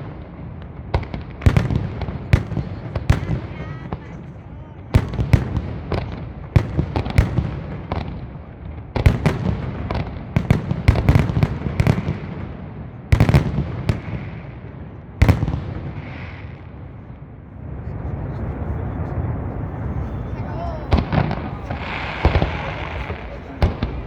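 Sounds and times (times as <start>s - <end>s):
fireworks bursting with sharp bangs: 0.0s - 24.0s
low rumble of echoing reports: 16.8s - 24.0s.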